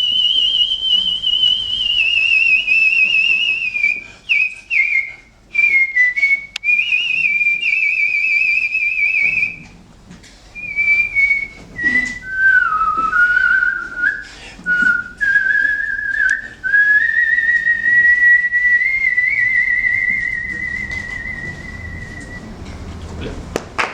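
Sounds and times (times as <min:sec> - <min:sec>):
man whistling a melody: 0:00.0 - 0:09.6, 0:10.6 - 0:22.9.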